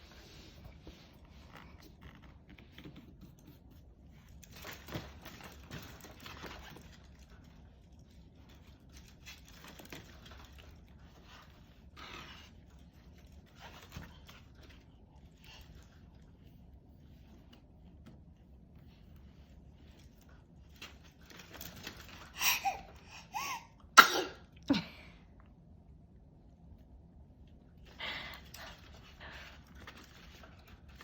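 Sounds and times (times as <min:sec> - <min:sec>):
rustling: 0:00.0 - 0:23.0, 0:28.4 - 0:31.0
baby breathing: 0:22.3 - 0:23.8.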